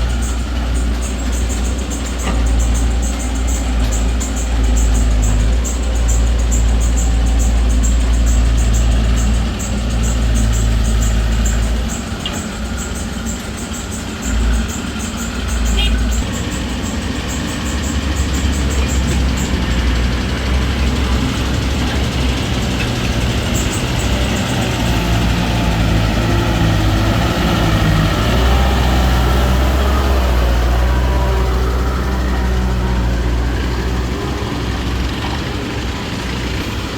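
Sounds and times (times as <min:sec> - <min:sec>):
fast ticking: 0:00.0 - 0:36.6
diesel engine running: 0:00.0 - 0:36.9.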